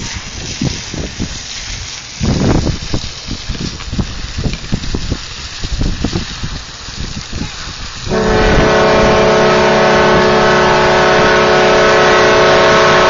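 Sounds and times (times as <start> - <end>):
train horn chord blast: 8.1 - 13.0.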